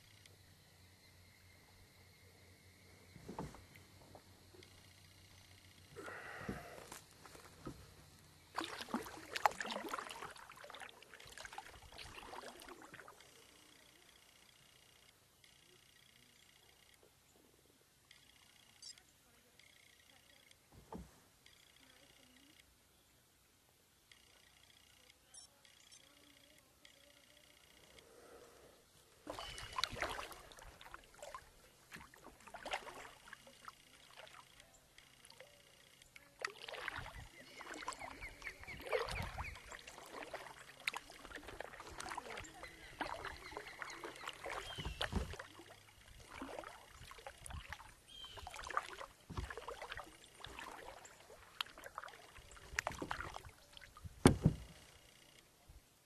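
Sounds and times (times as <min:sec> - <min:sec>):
water against hull: 0:03.0 - 0:17.0, 0:28.9 - 0:55.4
knocks and scrapes on kayak hull: 0:44.6 - 0:45.4, 0:54.0 - 0:54.8
loud thump: 0:54.2 - 0:54.7.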